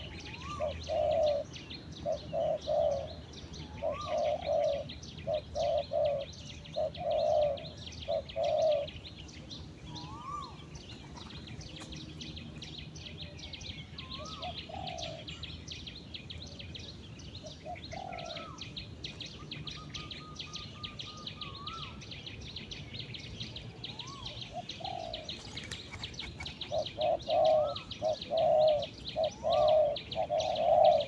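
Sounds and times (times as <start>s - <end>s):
doves cooing: 0.0s - 9.1s, 9.9s - 11.7s, 14.0s - 15.4s, 17.4s - 18.7s, 23.7s - 31.0s.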